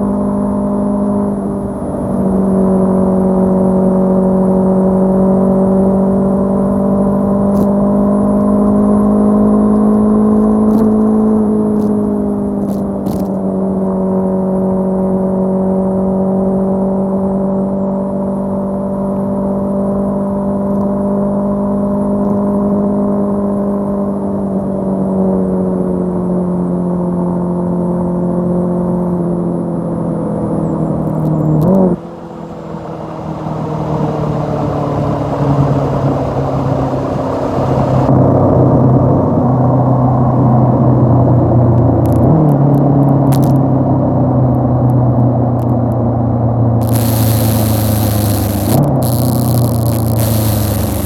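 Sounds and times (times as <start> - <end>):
motorcycle engine running: 46.8 - 51.0.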